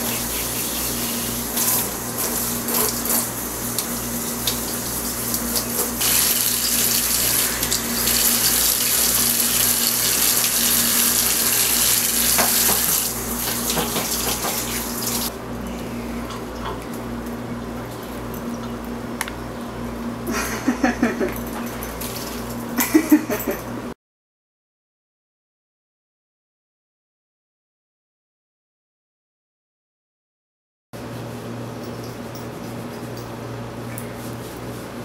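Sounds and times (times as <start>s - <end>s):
tap water running into sink: 0.0s - 15.3s
steady low hum: 0.0s - 23.9s.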